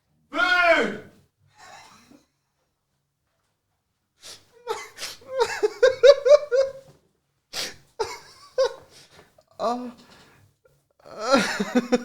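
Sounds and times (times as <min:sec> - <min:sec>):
person laughing: 0:04.8 - 0:06.8, 0:11.3 - 0:12.0.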